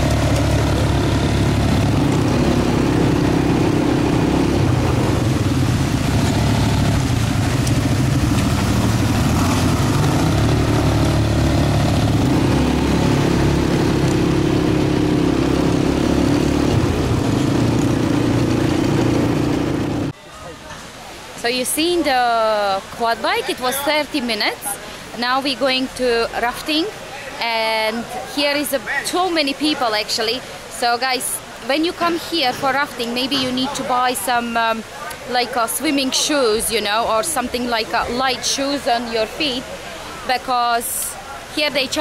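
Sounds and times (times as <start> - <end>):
quad bike engine running: 0.0 - 20.1.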